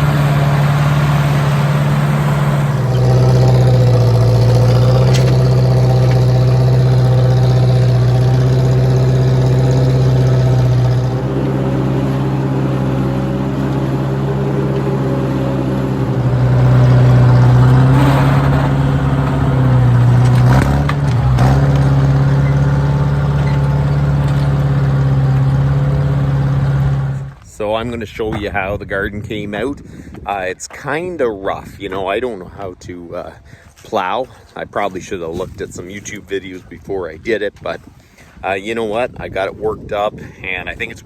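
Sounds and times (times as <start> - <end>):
tractor engine running: 0.0 - 29.0.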